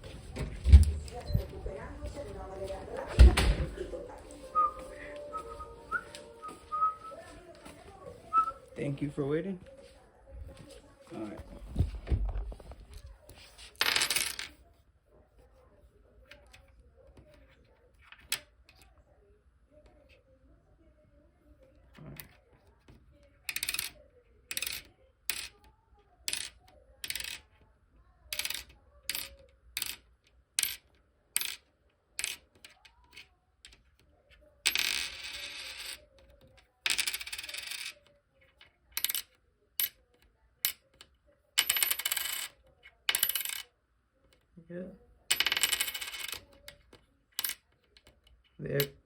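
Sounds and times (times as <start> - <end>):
coin ringing and rattling: 13.8 - 14.5, 23.5 - 25.5, 30.6 - 30.8, 34.7 - 36.0, 36.8 - 38.0, 41.6 - 43.6, 45.3 - 46.5
coins pinging on hard surface: 13.8 - 14.5, 23.5 - 25.5, 26.3 - 27.5, 28.3 - 33.8, 34.6 - 38.1, 38.9 - 40.0, 40.6 - 43.7, 45.3 - 46.8, 47.4 - 48.1.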